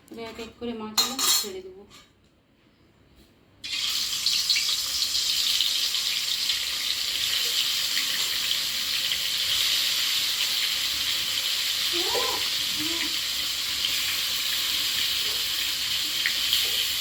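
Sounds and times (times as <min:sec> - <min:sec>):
fish frying in hot oil: 0:03.6 - 0:17.0.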